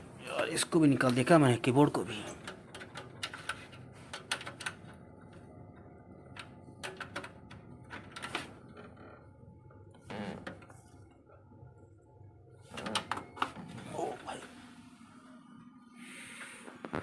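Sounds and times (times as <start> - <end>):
desktop computer hum: 0.0 - 17.0.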